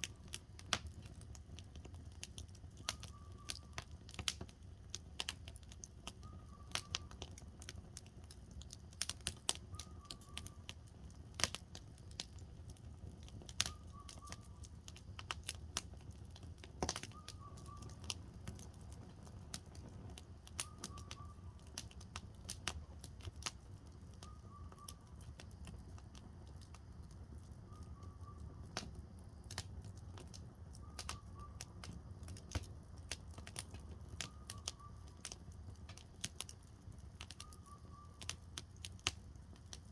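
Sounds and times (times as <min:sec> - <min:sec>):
campfire crackling and popping: 0:00.0 - 0:39.9
bird call: 0:17.0 - 0:18.1.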